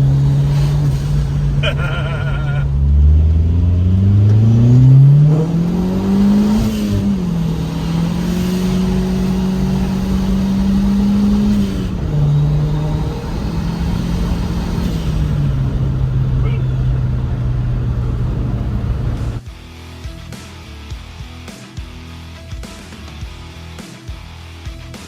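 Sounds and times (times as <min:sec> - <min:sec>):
car engine revving: 0:00.0 - 0:19.4.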